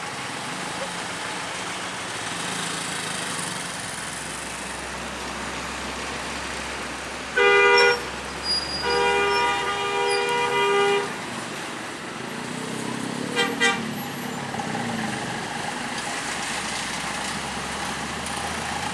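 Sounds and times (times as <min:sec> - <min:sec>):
road traffic noise: 0:00.0 - 0:18.9
multi-tone bus air horn: 0:07.4 - 0:11.2, 0:13.4 - 0:14.0.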